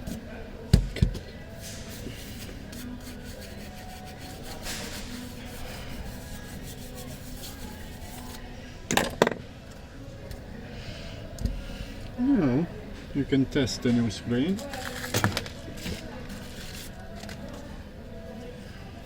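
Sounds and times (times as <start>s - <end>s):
phone parts rubbing and scraping: 1.6s - 8.4s, 14.6s - 17.4s.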